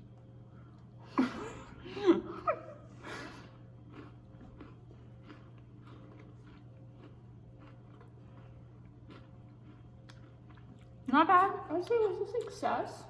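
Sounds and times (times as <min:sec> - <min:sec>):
people chewing soft food: 0:00.0 - 0:11.1
steady low hum: 0:00.0 - 0:13.0.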